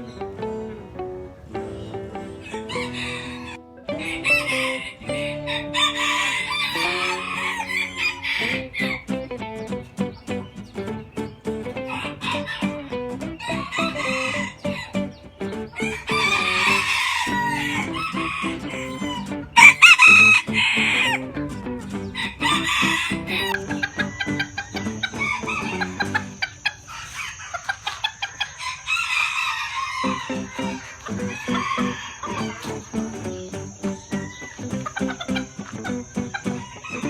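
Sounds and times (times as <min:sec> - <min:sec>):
chicken clucking: 0:02.2 - 0:09.3, 0:10.0 - 0:37.0
rooster crowing: 0:02.4 - 0:09.0, 0:13.6 - 0:14.9, 0:15.8 - 0:21.2, 0:22.2 - 0:24.6, 0:28.6 - 0:32.6.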